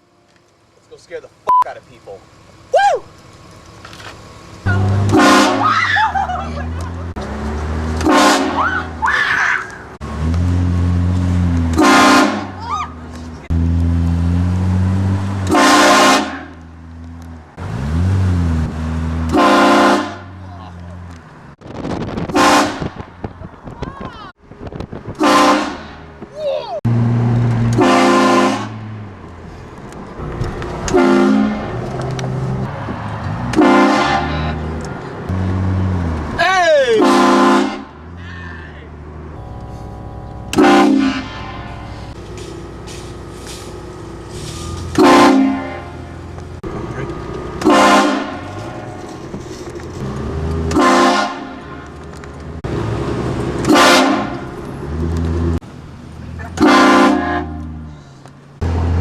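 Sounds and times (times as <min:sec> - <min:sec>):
low vehicle rumble: 0:00.0 - 0:59.0
car train horn blasts: 0:04.8 - 0:05.8, 0:08.0 - 0:08.9, 0:11.6 - 0:12.6, 0:15.4 - 0:16.6, 0:19.3 - 0:20.4, 0:22.3 - 0:23.0, 0:25.2 - 0:26.1, 0:27.7 - 0:28.8, 0:30.9 - 0:31.8, 0:33.5 - 0:34.8, 0:36.9 - 0:38.2, 0:39.4 - 0:42.2, 0:44.7 - 0:46.3, 0:47.6 - 0:49.0, 0:50.7 - 0:51.9, 0:53.6 - 0:54.6, 0:56.5 - 0:57.9.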